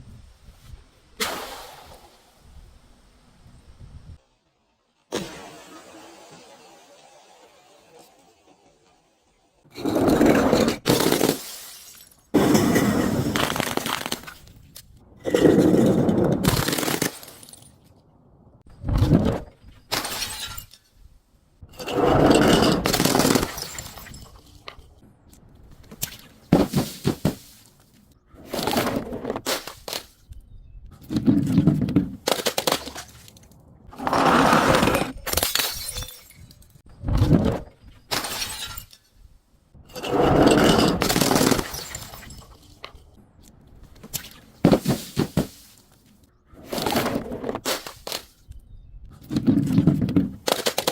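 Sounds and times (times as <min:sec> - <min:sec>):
glass bottles breaking: 0:10.6 - 0:14.4, 0:16.4 - 0:17.8, 0:19.9 - 0:21.0, 0:21.8 - 0:24.8, 0:35.0 - 0:36.8, 0:38.1 - 0:39.2, 0:39.9 - 0:42.8.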